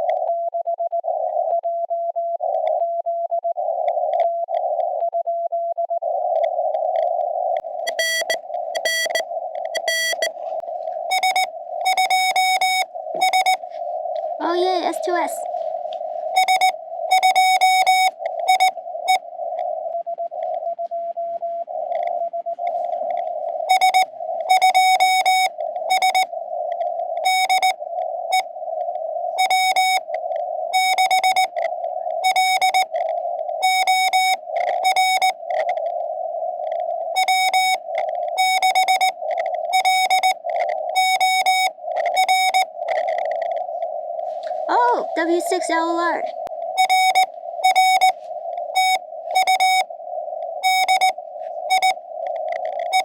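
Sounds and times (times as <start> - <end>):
faint lower morse signal: 0.0 - 53.0
morse code tones: 6.5 - 10.4, 11.0 - 15.5, 16.3 - 19.2, 23.0 - 26.3, 27.2 - 28.5, 29.4 - 30.2, 30.8 - 35.8, 37.2 - 43.6, 44.6 - 49.9, 50.5 - 53.0
radio hiss: 9.8 - 19.9, 39.6 - 53.0.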